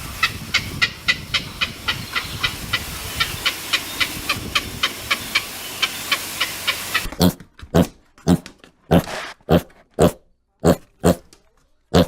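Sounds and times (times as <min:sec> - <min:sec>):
steady background hiss: 0:00.0 - 0:07.1
bird calling: 0:00.0 - 0:07.3.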